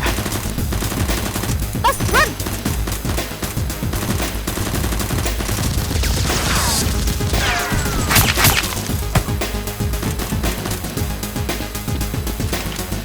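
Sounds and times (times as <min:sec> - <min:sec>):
rapid gunfire: 0:00.0 - 0:12.8.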